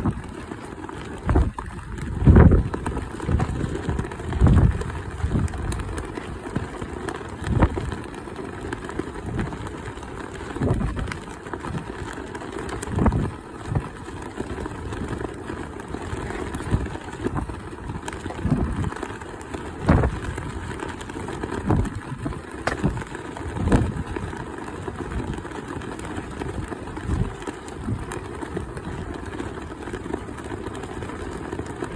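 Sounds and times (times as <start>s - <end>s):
wind buffeting microphone: 0.0s - 0.4s, 1.0s - 8.1s, 10.5s - 12.1s, 12.8s - 15.2s, 16.0s - 25.4s, 26.2s - 29.2s.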